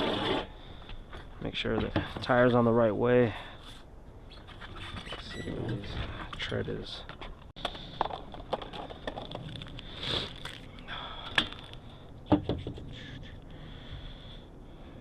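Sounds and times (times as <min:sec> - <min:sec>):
rubber scraping on wheel rim: 0:00.0 - 0:00.5.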